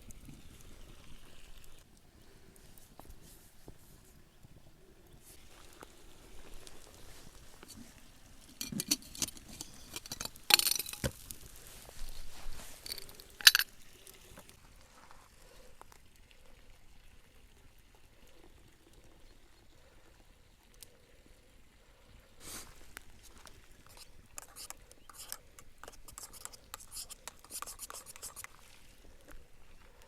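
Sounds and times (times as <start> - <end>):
sharp clinks and knocks: 8.6 - 11.2, 12.9 - 13.7.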